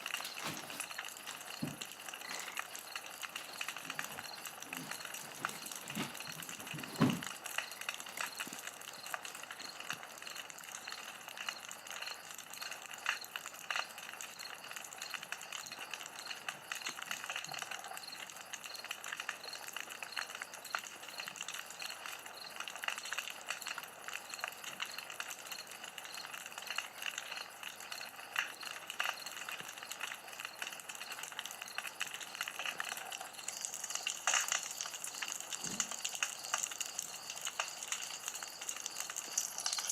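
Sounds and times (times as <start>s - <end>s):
campfire crackling: 0.0s - 39.9s.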